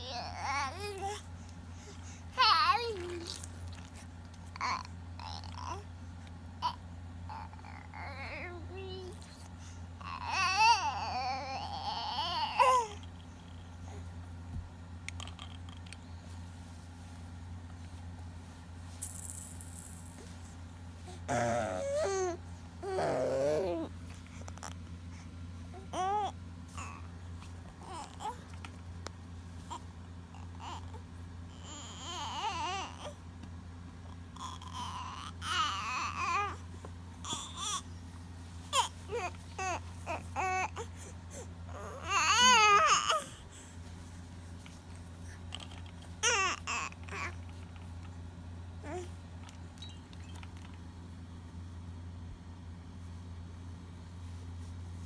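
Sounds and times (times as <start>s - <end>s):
infant cooing: 0.0s - 1.2s, 2.4s - 3.4s, 4.6s - 5.8s, 6.6s - 9.2s, 10.0s - 13.0s, 21.1s - 24.0s, 25.7s - 27.1s, 27.8s - 28.4s, 30.4s - 33.2s, 34.4s - 36.6s, 37.2s - 37.8s, 38.7s - 43.6s, 45.7s - 47.4s, 48.8s - 49.1s
toy rattle shaking: 19.0s - 20.4s
baby squealing and cooing: 21.3s - 23.9s, 41.7s - 43.3s.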